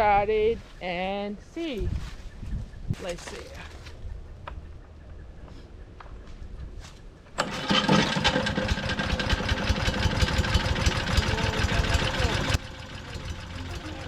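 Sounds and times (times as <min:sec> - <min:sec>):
small gasoline engine starting: 0:07.4 - 0:14.0.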